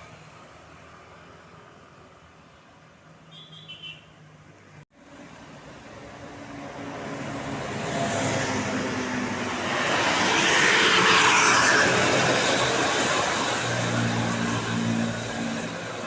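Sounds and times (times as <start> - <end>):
large vehicle passing by: 5.2 - 16.0.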